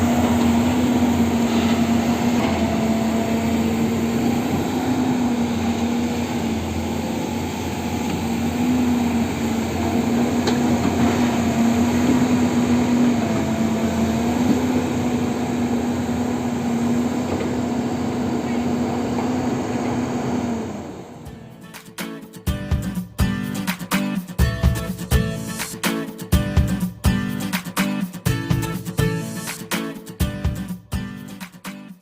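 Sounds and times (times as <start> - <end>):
excavator diesel engine running: 0.0 - 23.7.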